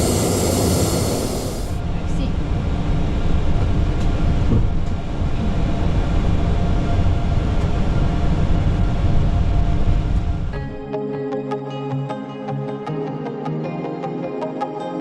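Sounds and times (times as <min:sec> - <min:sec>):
jet engines rumbling: 0:00.0 - 0:10.6.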